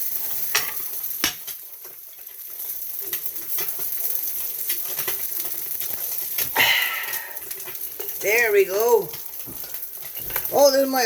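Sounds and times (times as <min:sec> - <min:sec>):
food sizzling in a frying pan: 0:00.0 - 0:11.0
utensil clicking and scraping pan: 0:00.1 - 0:10.6.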